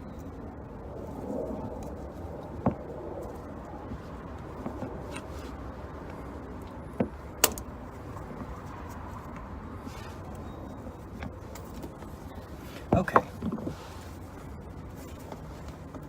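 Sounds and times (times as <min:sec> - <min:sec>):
metallic clicks and clanks of wrench: 0:07.4 - 0:07.7.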